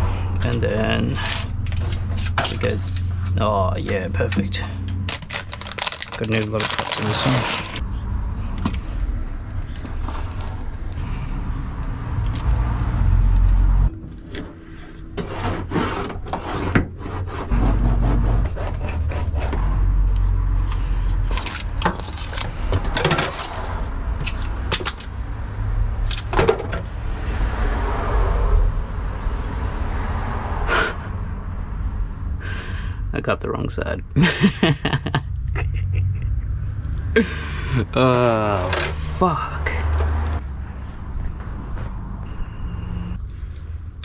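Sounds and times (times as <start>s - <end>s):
steady low rumble: 0.0s - 15.2s, 17.2s - 23.0s, 26.8s - 44.0s
scraping and crinkling foil sheet: 1.2s - 3.1s, 5.1s - 7.8s, 21.2s - 25.0s.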